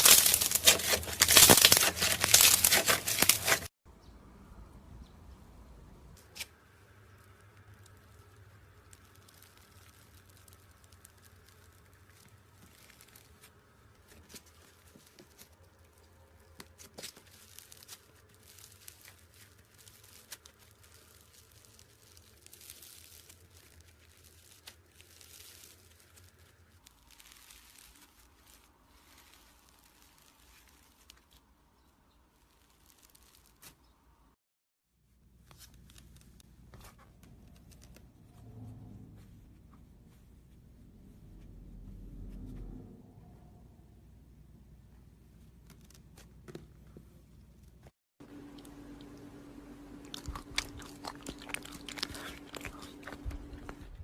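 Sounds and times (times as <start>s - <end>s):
slime crackling and tearing: 0.0s - 3.7s, 7.2s - 31.4s, 32.4s - 33.8s, 50.0s - 54.0s.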